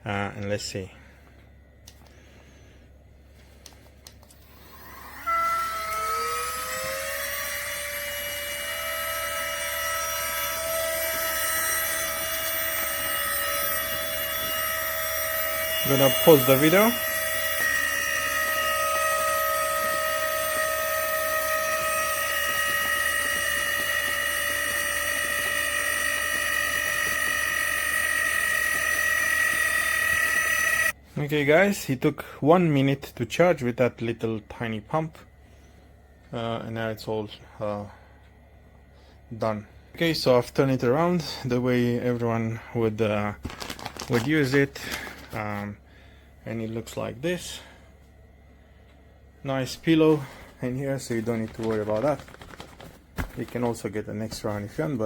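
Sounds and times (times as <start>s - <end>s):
electric air pump motor whine: 4.3s - 31.0s.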